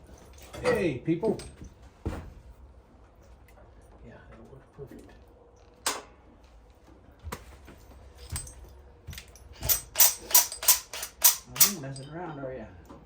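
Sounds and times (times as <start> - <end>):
metallic clinks of tools: 8.2 - 12.5.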